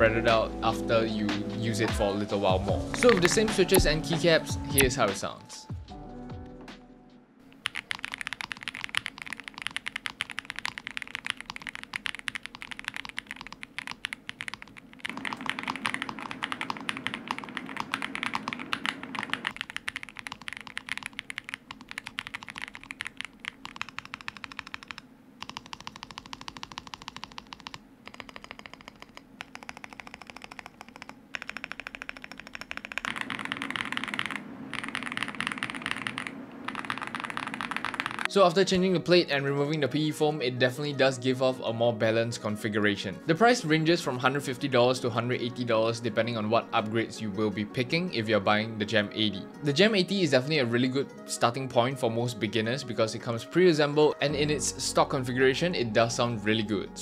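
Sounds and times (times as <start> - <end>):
fast typing on mechanical keyboard: 7.5 - 38.3.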